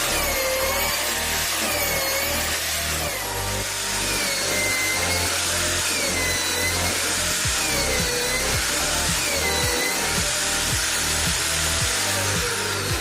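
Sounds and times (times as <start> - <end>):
drilling machine whining: 0.0 - 13.0.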